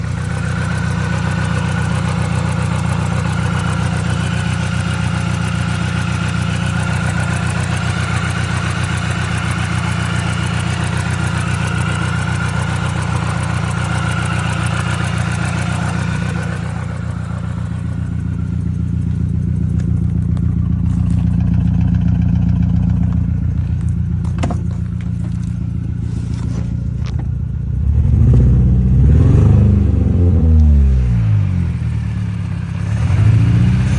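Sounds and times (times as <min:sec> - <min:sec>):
engine revving: 0:00.0 - 0:23.2, 0:27.6 - 0:33.9
car engine idling with misfire: 0:00.0 - 0:33.9.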